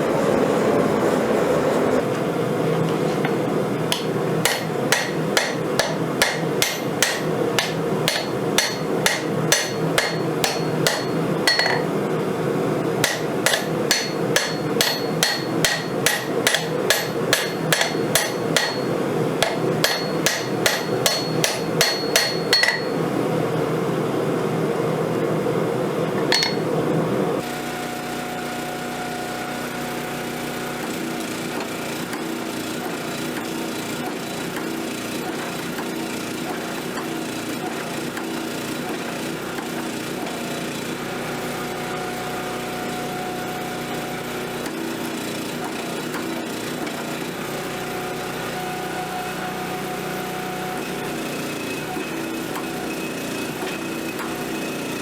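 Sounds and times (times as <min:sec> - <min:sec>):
steady roar: 0:00.0 - 0:02.0
hammer striking steel on anvil: 0:03.9 - 0:12.0, 0:13.0 - 0:23.0, 0:26.2 - 0:26.7.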